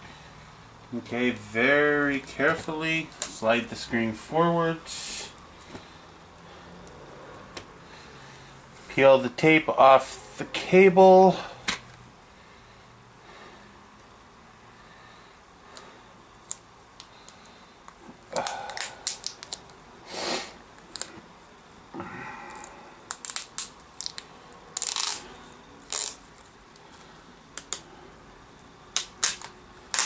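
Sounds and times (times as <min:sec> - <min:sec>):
tape being peeled off: 0:18.3 - 0:19.8, 0:20.8 - 0:21.2, 0:23.1 - 0:27.0, 0:28.9 - 0:30.0.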